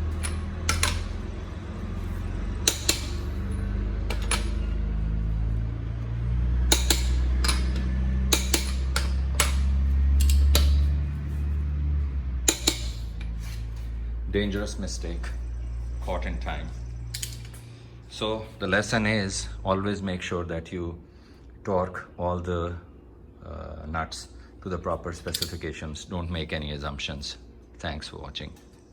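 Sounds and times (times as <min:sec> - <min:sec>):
steady low hum: 0:00.0 - 0:28.9
torque wrench clicking: 0:00.1 - 0:01.1, 0:02.6 - 0:04.6, 0:06.7 - 0:11.0, 0:12.5 - 0:13.2, 0:17.1 - 0:17.6.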